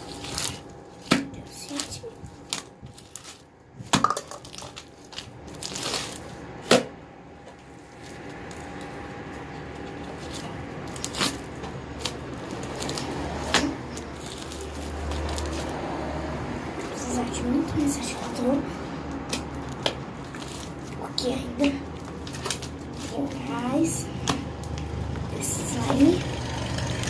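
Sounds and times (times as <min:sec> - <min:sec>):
slime squishing: 0:00.0 - 0:06.8, 0:07.4 - 0:15.8, 0:19.2 - 0:23.4.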